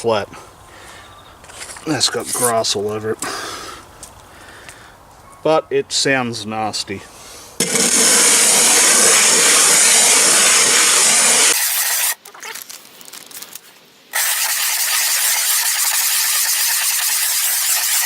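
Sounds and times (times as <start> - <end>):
stone grinding on glass plate: 7.6 - 12.2.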